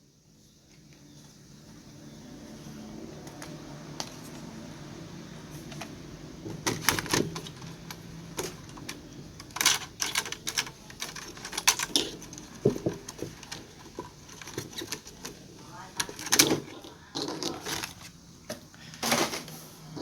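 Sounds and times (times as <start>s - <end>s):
small hard objects clattering: 6.5s - 19.6s.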